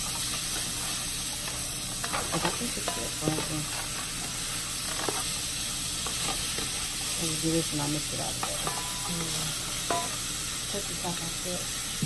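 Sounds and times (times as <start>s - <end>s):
vegetables sizzling in hot oil: 0.0s - 12.0s
utensil scraping a pot: 8.0s - 10.2s.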